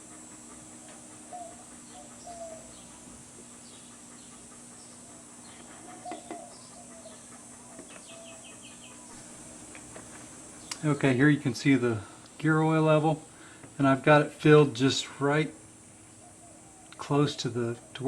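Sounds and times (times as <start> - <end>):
bird clucking calls: 0.0 - 10.8
bird chirps: 0.9 - 9.2.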